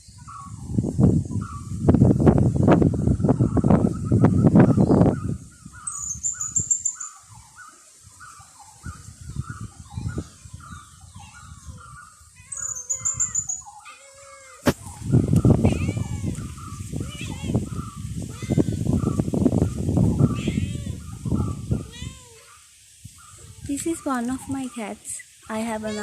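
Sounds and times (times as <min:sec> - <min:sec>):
birds calling: 0:00.0 - 0:01.9, 0:02.8 - 0:26.0
wind buffeting microphone: 0:00.0 - 0:13.9, 0:14.6 - 0:26.0
high chirping trill: 0:12.4 - 0:13.7.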